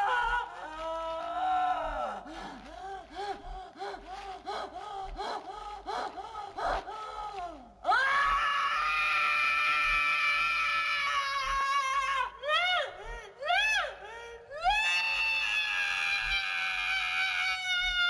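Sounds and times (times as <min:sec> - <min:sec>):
long high scream: 0:07.9 - 0:11.7, 0:14.6 - 0:18.0.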